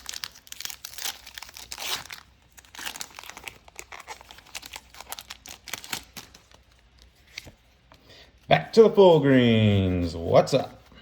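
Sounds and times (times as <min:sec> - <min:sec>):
foil wrapper crinkling: 0:00.0 - 0:07.4.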